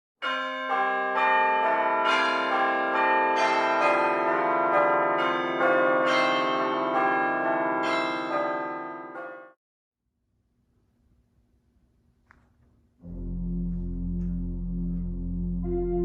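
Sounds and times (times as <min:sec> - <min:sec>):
church bells ringing: 0:00.2 - 0:09.6.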